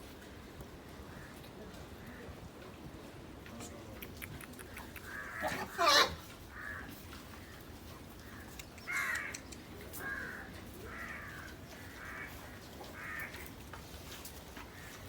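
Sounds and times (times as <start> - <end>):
crow cawing: 5.1 - 6.9, 8.9 - 9.4, 10.0 - 12.4, 13.0 - 13.4.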